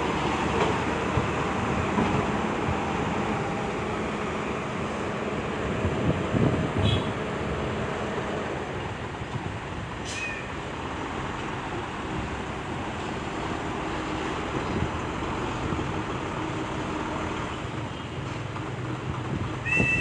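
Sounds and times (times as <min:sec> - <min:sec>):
wind noise on microphone: 0:04.8 - 0:07.9, 0:19.0 - 0:20.0.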